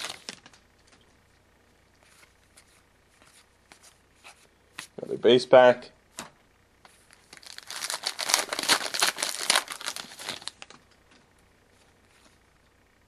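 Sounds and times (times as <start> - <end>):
foil wrapper tearing and crinkling: 0.0 - 0.6, 7.1 - 10.7.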